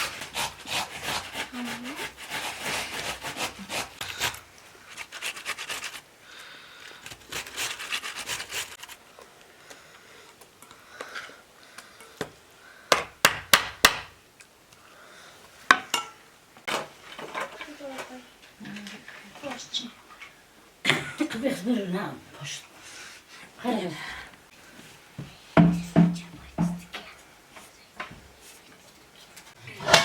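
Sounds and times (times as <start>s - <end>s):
quick scraping strokes: 0.0s - 6.1s
sharp knocks: 12.9s - 14.1s, 25.6s - 26.9s.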